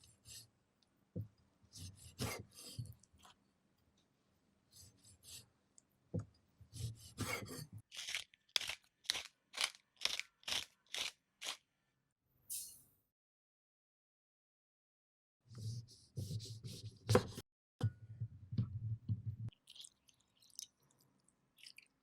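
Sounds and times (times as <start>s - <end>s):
food being cut: 7.2s - 11.6s.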